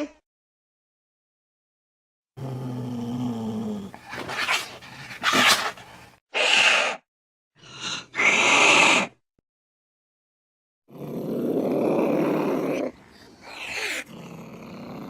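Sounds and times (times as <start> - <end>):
cat hissing and spitting: 3.9 - 7.0, 13.4 - 14.1
cat growling: 10.9 - 15.0.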